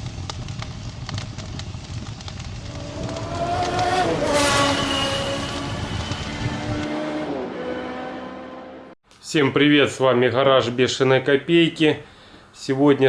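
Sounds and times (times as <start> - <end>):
four-cylinder engine revving: 2.6 - 9.0.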